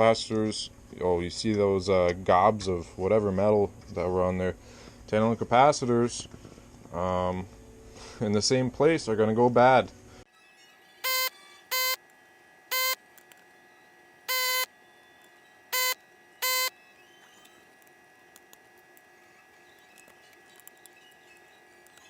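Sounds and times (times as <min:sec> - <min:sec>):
short electronic beeps: 0:12.7 - 0:13.0, 0:14.3 - 0:14.7, 0:15.7 - 0:16.8.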